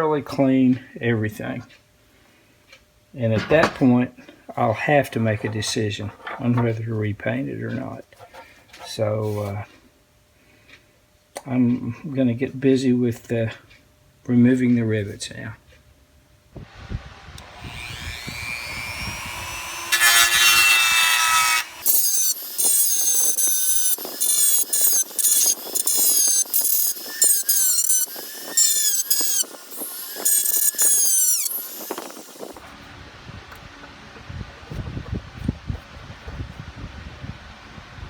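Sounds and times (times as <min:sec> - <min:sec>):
power drill squealing on metal: 0:17.8 - 0:32.6.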